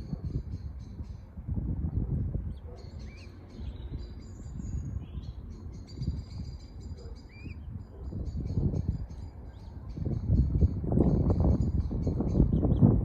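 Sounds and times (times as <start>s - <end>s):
birds chirping and peeping: 0.0s - 13.0s
bird whistled notes: 2.8s - 8.9s.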